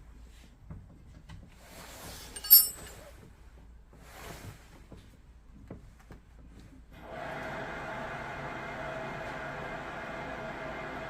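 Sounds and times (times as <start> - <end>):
sharp clink of hard object: 2.4 - 2.9.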